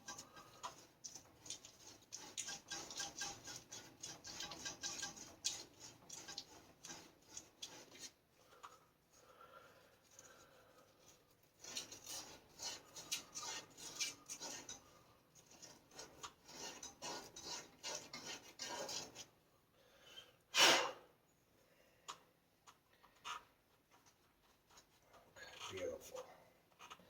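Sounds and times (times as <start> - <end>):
abrasive rasping on copper pipe: 0.0 - 19.4.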